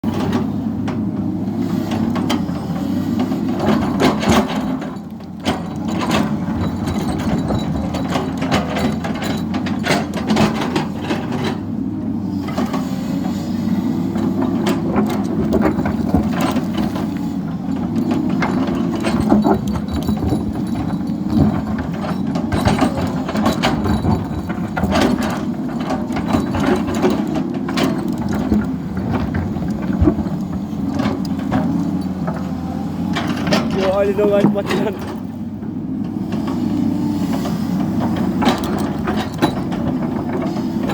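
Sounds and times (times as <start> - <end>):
excavator diesel engine running: 0.0 - 40.9
bucket knocking and scraping masonry: 18.0 - 32.2.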